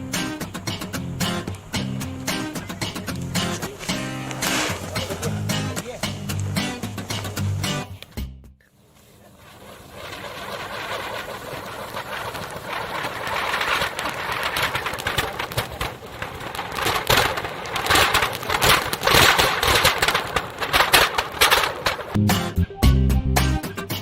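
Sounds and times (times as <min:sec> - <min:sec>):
firecracker sparks hissing and crackling: 0:00.0 - 0:22.2
dense crackling: 0:00.0 - 0:22.3.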